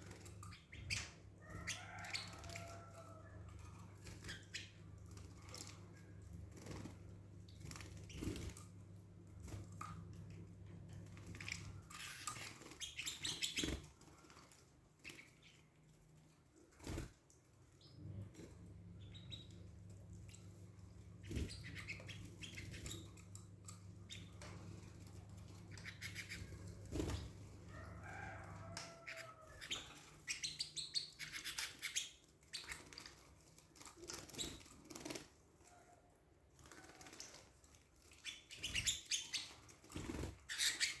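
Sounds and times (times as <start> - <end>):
birds fluttering wings: 4.0 - 15.3, 16.6 - 17.2, 24.1 - 28.4, 36.6 - 41.0
bird chirps: 29.0 - 32.8.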